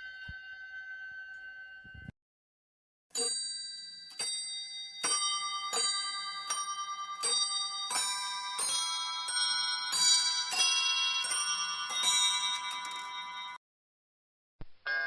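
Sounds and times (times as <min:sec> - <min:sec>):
alarm clock chime tune: 0:00.0 - 0:02.1, 0:03.2 - 0:13.6.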